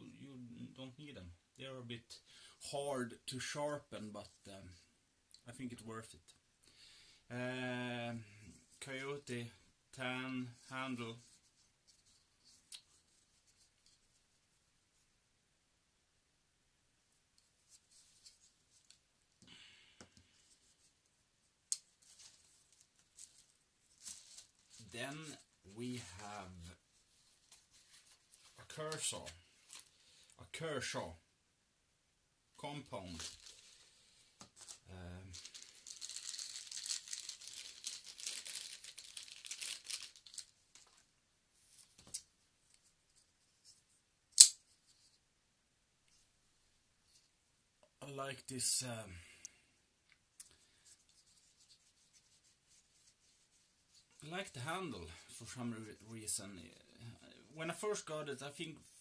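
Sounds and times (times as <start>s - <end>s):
crinkly rustling handling noise: 21.8s - 30.4s, 32.6s - 44.0s, 50.4s - 56.4s
sharp knife click: 44.4s - 44.6s.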